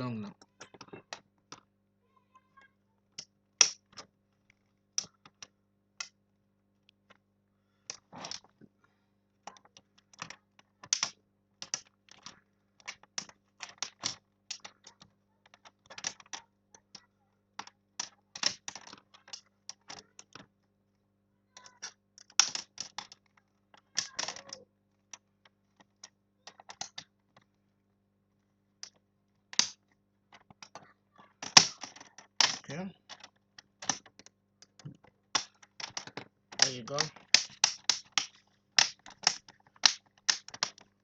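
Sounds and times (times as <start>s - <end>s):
faint steady hum: 0.0s - 41.0s
plastic clicks and snaps: 9.5s - 17.0s, 28.8s - 30.8s, 31.4s - 40.9s.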